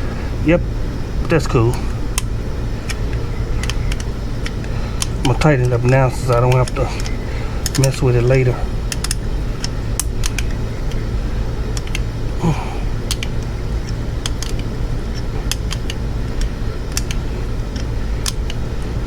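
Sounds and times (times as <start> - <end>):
steady low hum: 0.0 - 19.0
hand tools clicking on fastener: 2.2 - 11.0, 15.4 - 18.6.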